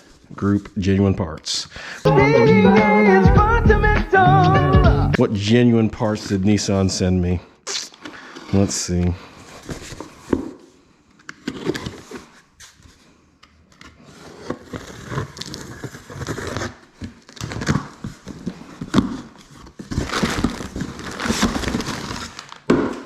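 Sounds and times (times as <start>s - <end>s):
cardboard box being opened: 14.0s - 22.7s
packing material rustling: 14.0s - 22.7s.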